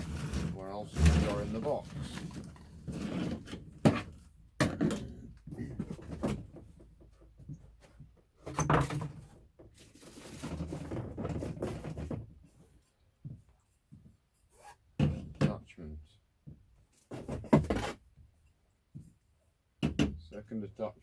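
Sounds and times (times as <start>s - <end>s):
rustling packaging: 0.0s - 3.6s.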